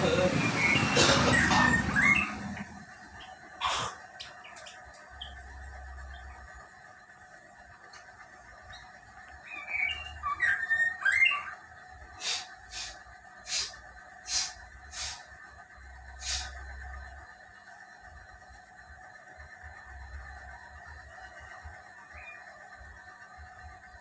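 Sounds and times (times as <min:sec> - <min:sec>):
bird whistling and chirping: 0:00.0 - 0:03.4, 0:08.7 - 0:12.9, 0:22.0 - 0:22.5
short harsh bird calls: 0:00.0 - 0:04.6.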